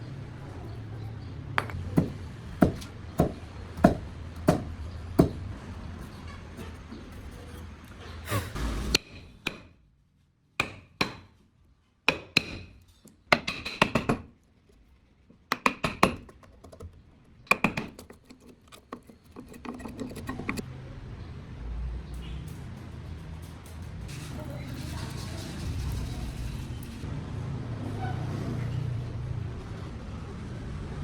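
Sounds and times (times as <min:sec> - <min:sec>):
woodworking taps and knocks: 0:01.6 - 0:07.6, 0:15.4 - 0:20.6.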